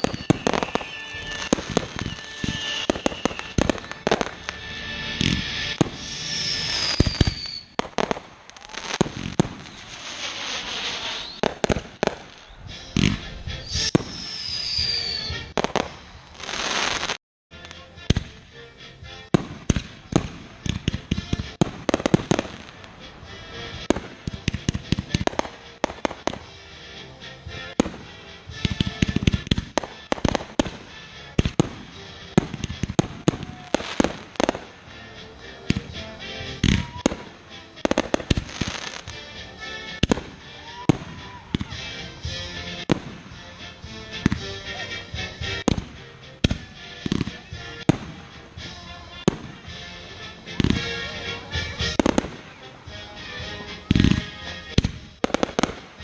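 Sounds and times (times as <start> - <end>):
firework falling whistle: 0.0 - 18.4, 27.4 - 43.4
fireworks bangs and crackling: 0.0 - 56.0.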